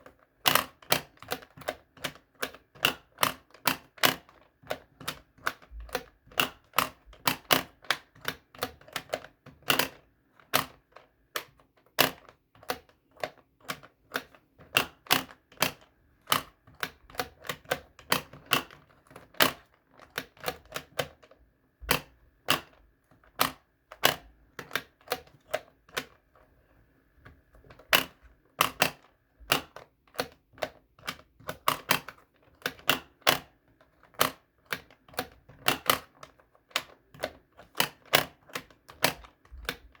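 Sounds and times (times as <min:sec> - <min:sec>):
plastic toy clicks and snaps: 0:27.9 - 0:39.8.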